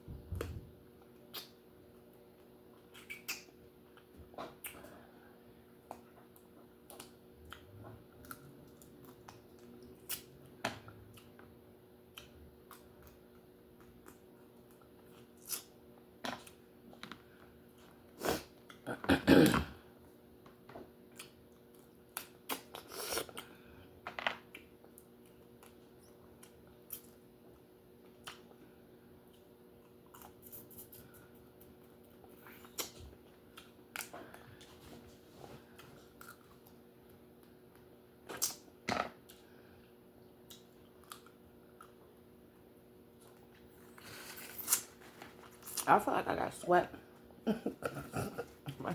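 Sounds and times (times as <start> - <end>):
faint electrical hum: 0.0 - 48.9
chewing: 29.3 - 34.7, 40.5 - 42.0.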